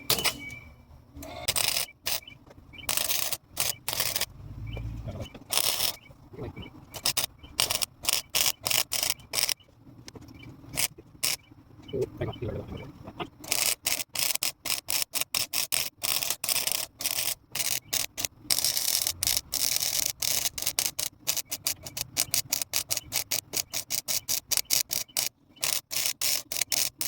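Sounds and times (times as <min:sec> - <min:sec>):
welder crackling: 0:01.2 - 0:11.5, 0:13.1 - 0:27.0.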